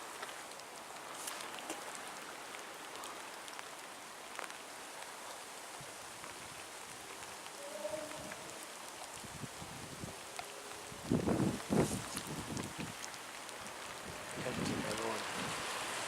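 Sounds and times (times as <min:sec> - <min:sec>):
drip-like ticks: 0:12.0 - 0:14.0
water hissing: 0:15.2 - 0:16.0.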